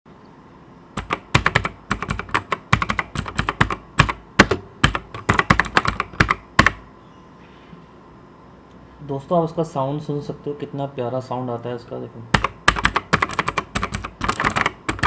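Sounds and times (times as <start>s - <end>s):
mechanical keyboard typing: 1.0s - 6.8s, 12.3s - 15.0s.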